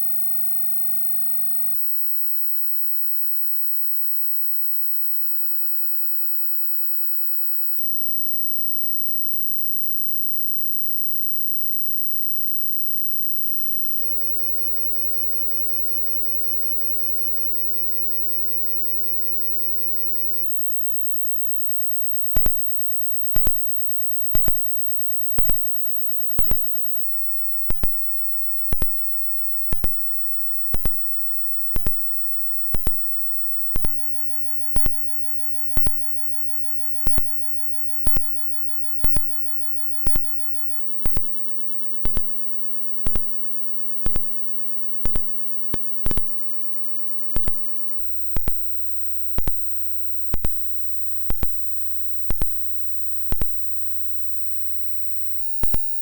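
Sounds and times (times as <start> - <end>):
high pure sine tone: 0.0 - 56.0
sharp ticks: 26.4 - 26.6, 27.7 - 28.0, 28.7 - 29.0, 29.7 - 30.0, 30.7 - 31.0, 31.8 - 32.0, 32.8 - 33.0, 34.8 - 35.0, 35.8 - 36.0, 37.1 - 37.3, 38.1 - 38.3, 39.0 - 39.3, 40.0 - 40.3, 41.1 - 41.3, 42.0 - 42.3, 43.0 - 43.3, 44.0 - 44.3, 45.0 - 46.3, 47.4 - 47.6, 48.3 - 48.7, 49.4 - 49.6, 50.3 - 50.6, 51.2 - 51.6, 52.3 - 52.6, 53.3 - 53.6.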